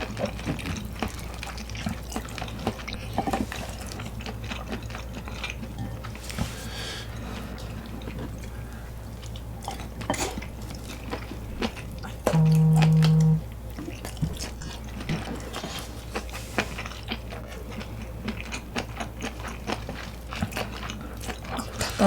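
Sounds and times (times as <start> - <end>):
steady low buzz: 12.1 - 13.8.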